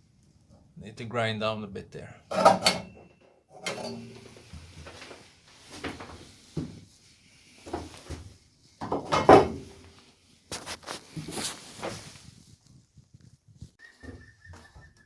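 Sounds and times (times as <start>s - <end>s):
metal pieces clunking and scraping: 2.3s - 5.2s, 8.8s - 9.8s.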